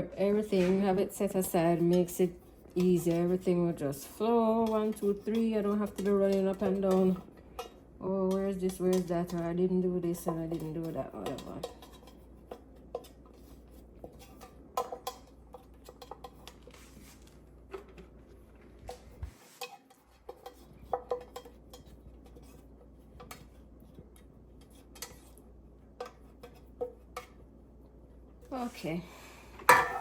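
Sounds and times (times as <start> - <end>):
low steady hum: 0.0 - 30.0
kitchen utensils and dishes clinking: 0.3 - 16.8, 18.8 - 22.6, 29.6 - 30.0.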